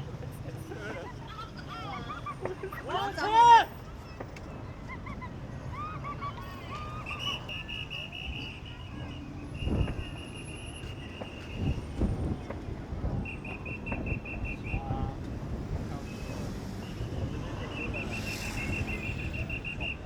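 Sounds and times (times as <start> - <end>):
outdoor crowd noise: 0.0 - 20.0
whistle trilled blasts: 7.0 - 11.8, 13.2 - 14.9, 16.8 - 20.0.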